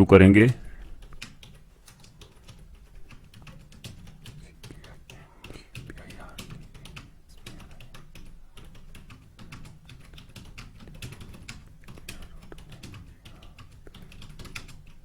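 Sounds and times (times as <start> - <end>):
fast keyboard typing: 0.4 - 15.0.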